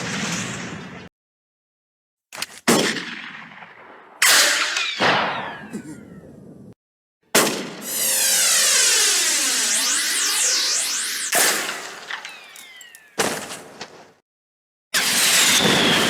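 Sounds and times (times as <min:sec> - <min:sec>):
sharp gunshot bangs: 0:02.7 - 0:05.7, 0:07.4 - 0:07.9
sniper rifle shot: 0:02.7 - 0:05.8
sweeping warbling effect: 0:08.0 - 0:12.9
falling whistling tones: 0:08.0 - 0:13.2.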